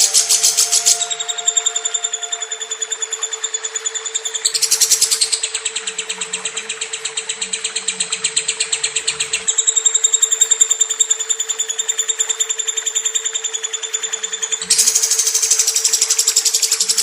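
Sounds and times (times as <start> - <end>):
lovebird chattering trill: 0.0 - 5.9, 14.6 - 17.0.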